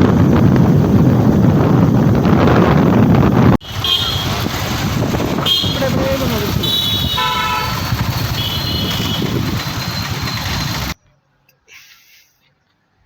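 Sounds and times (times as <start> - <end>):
busy traffic noise: 0.0 - 11.6
car horn toots: 3.6 - 4.5, 5.4 - 9.5.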